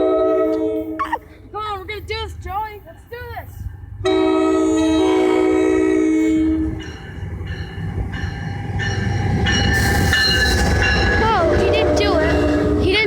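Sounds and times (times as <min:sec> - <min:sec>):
train chord horn blast: 0:00.0 - 0:01.4, 0:04.0 - 0:06.8, 0:11.0 - 0:13.0
train rumble: 0:00.0 - 0:13.0.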